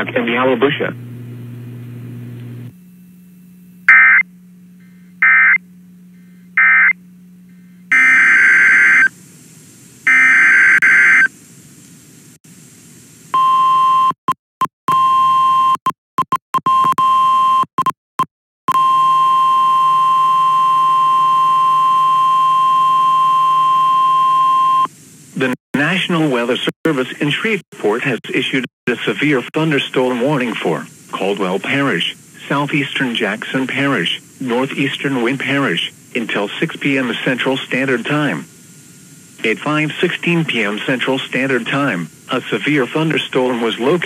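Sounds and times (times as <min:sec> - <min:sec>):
screechy data bursts: 0:05.2 - 0:05.6, 0:06.6 - 0:07.0, 0:07.9 - 0:09.2, 0:10.0 - 0:11.3.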